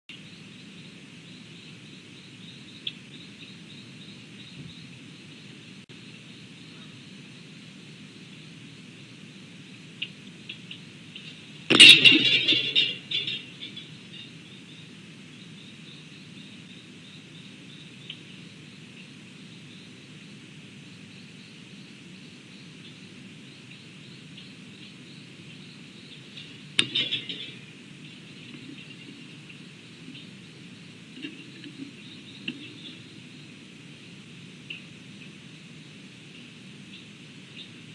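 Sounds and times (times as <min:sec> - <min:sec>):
faint outdoor ambience: 0:00.1 - 0:37.9
insect-like chirps: 0:00.1 - 0:37.9
loud clatter: 0:11.7 - 0:13.6.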